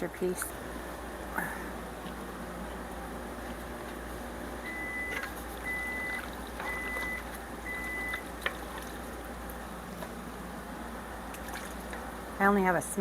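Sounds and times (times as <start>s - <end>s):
electronic beeps: 4.7s - 8.2s.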